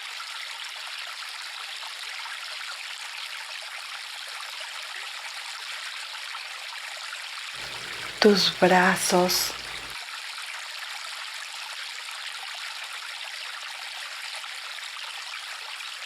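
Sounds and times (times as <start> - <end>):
river water flowing: 7.6 - 9.9.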